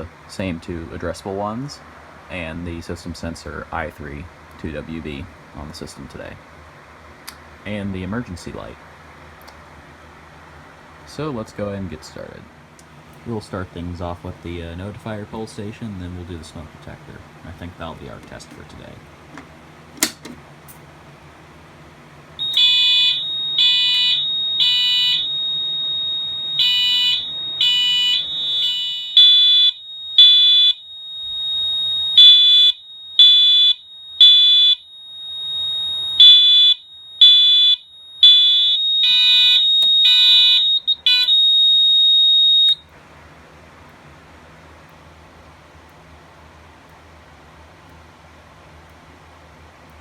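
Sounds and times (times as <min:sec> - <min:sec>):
steady high-pitched tone: 0:22.4 - 0:42.8
fire alarm horn pulses: 0:22.4 - 0:42.9.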